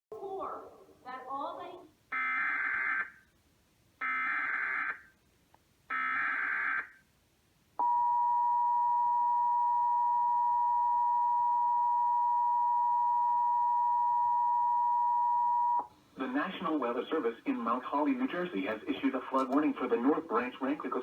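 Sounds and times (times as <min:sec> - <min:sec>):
two-tone attention signal: 0:07.8 - 0:15.9.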